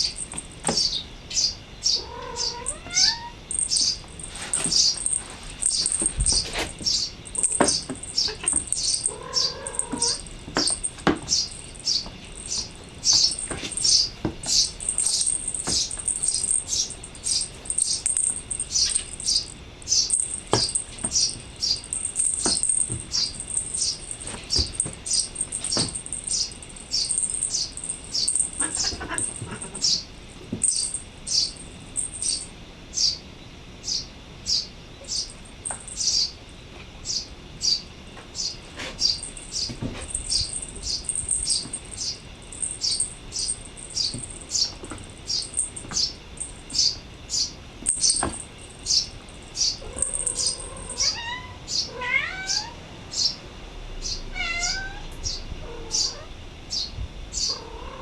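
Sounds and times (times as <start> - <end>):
small bird chirping: 0.0 - 33.2, 33.8 - 36.4, 37.0 - 53.4, 54.0 - 57.8
cat chirping meows: 0.8 - 4.0, 7.7 - 10.2, 24.6 - 30.1, 49.6 - 52.8, 54.2 - 56.3.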